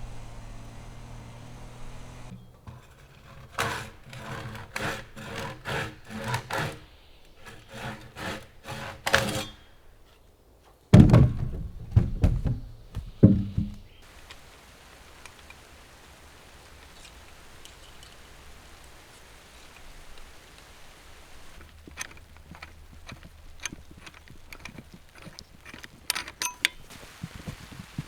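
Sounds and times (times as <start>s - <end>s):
soft rain hiss: 0.0s - 11.0s, 11.7s - 28.0s
taps and knocks: 11.0s - 14.0s.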